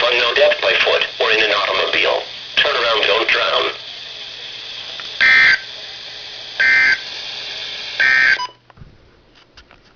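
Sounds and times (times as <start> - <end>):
radio hiss and low hum: 0.0 - 8.6
electronic data squawks: 5.2 - 5.7, 6.6 - 7.0, 8.0 - 8.6.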